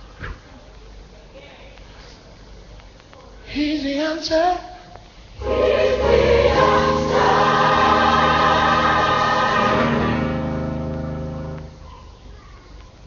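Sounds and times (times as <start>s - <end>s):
gospel choir singing: 5.4s - 11.6s
instrumental backing: 5.4s - 11.9s.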